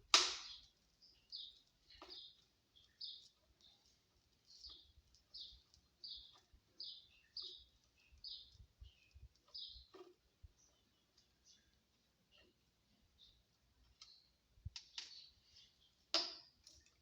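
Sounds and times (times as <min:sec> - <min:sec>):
small bird chirping: 0:00.4 - 0:17.0.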